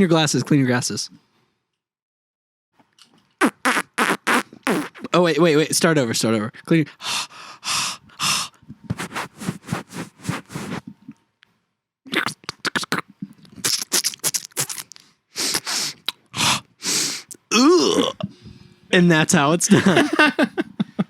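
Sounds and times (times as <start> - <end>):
mouth-made hissing and scraping: 8.2 - 10.9, 13.6 - 16.1, 16.8 - 17.4.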